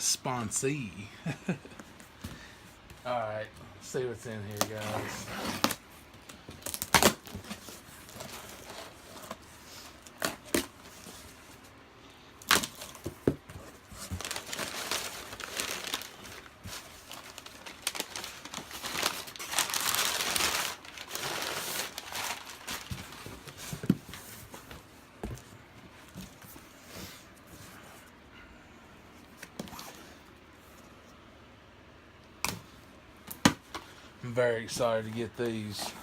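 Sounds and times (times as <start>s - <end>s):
packaging tearing and crinkling: 6.6s - 10.8s, 12.4s - 13.0s, 14.0s - 23.4s.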